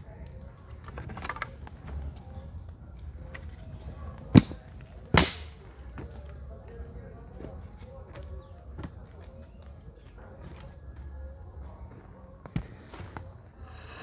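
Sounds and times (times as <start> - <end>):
wood fire crackling: 0.0 - 14.0
sharp wood cracks: 0.2 - 6.4.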